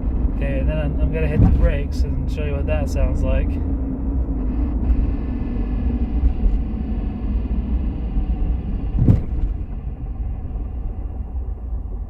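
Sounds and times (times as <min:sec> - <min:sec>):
brake rubbing: 0:00.0 - 0:12.0
road rumble inside car: 0:00.0 - 0:12.0
thump: 0:01.4 - 0:01.7, 0:08.9 - 0:09.8.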